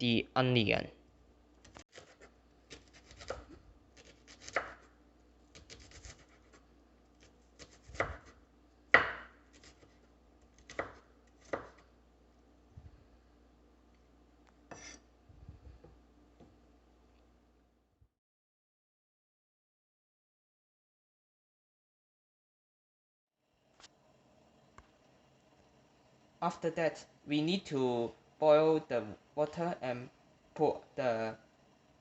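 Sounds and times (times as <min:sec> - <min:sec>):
knife chopping on board: 0:01.6 - 0:04.9, 0:05.5 - 0:06.6, 0:07.2 - 0:11.8, 0:14.7 - 0:15.0.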